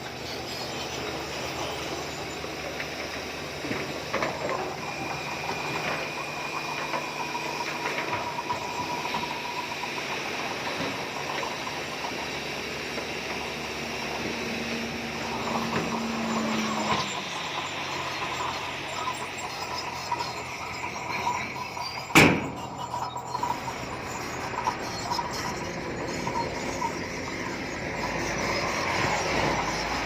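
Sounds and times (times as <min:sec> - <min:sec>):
bulldozer diesel engine running: 0:00.0 - 0:30.0
thin machine squealing: 0:00.0 - 0:30.0.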